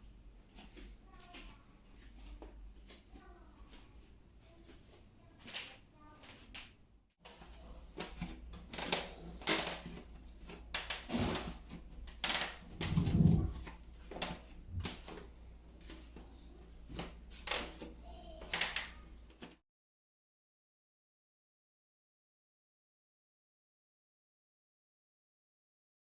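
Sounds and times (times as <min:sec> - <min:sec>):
wooden floorboards creaking: 0:08.0 - 0:15.2.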